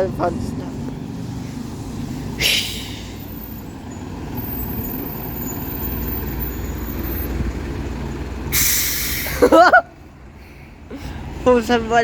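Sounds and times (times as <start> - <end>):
bus engine rumbling: 0.0 - 12.0
air brake hiss: 2.4 - 3.3, 8.5 - 9.4.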